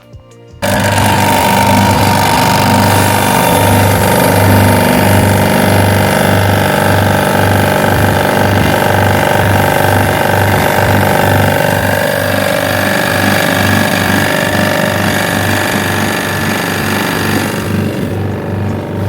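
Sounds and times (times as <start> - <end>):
machine motor whining and throbbing: 0.6 - 19.0.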